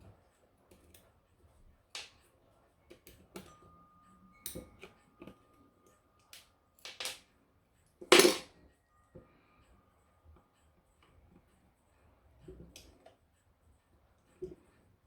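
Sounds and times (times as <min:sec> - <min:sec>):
thin ringing tone: 0:03.4 - 0:06.7
clinks of metal parts: 0:06.8 - 0:07.2, 0:08.0 - 0:08.5
metal parts clattering: 0:08.1 - 0:08.5.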